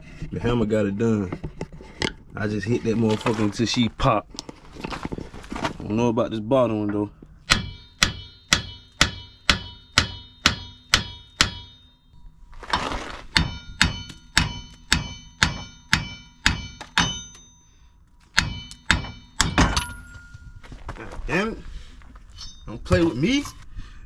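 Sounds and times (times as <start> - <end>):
hammer pounding on metal: 7.4 - 12.0, 13.3 - 17.7, 18.3 - 20.4.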